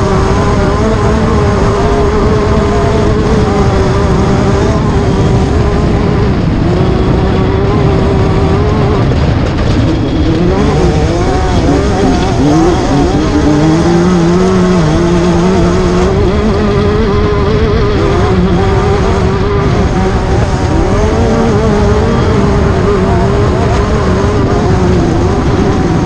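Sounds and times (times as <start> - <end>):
race car engine revving: 0.0 - 26.0.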